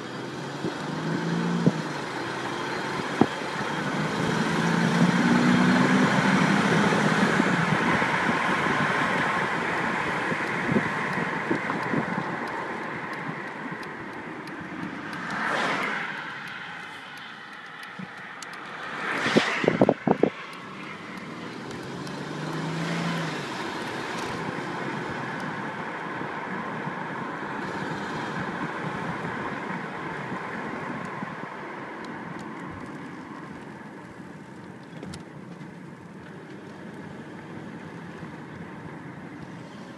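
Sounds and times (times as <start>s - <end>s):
car engine running: 0.0s - 31.4s.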